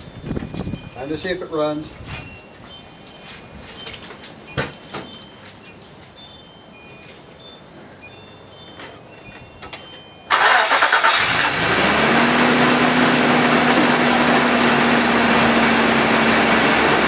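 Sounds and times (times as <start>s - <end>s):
truck engine starting and idling: 10.3s - 17.0s.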